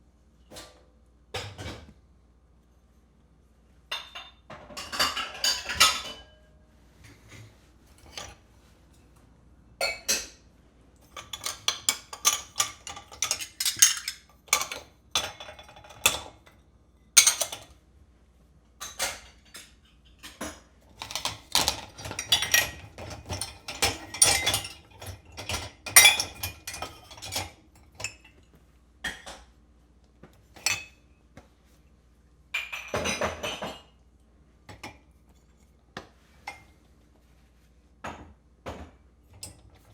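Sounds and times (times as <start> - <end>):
dishes and cutlery clinking: 3.9 - 6.5, 11.0 - 16.6, 18.8 - 29.5, 32.6 - 34.0.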